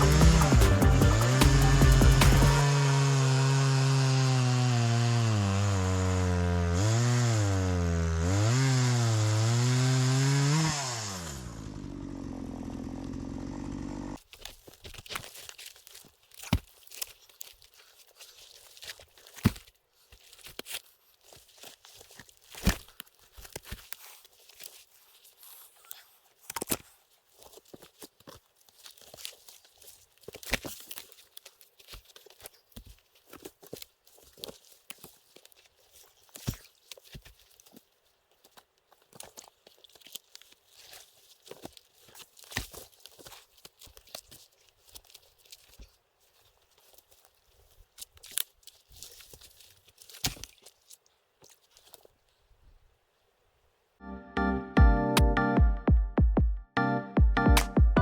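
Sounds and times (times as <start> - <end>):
chainsaw cutting wood: 0.0 - 14.3
knocks and crunches: 14.2 - 52.4.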